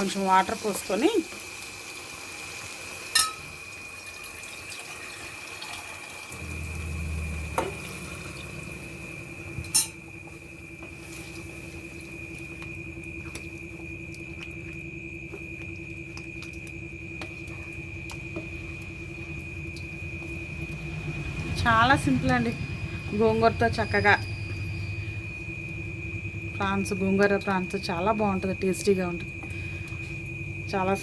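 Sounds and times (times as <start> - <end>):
water poured into a pan: 1.3 - 6.4
metal cookware clinking: 3.1 - 3.6, 9.6 - 10.0
high-pitched whine: 6.4 - 31.0
low hum: 6.4 - 31.0.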